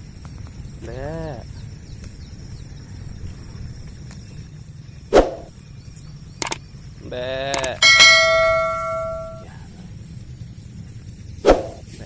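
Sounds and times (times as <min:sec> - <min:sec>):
sharp metallic clank: 0:07.8 - 0:09.5.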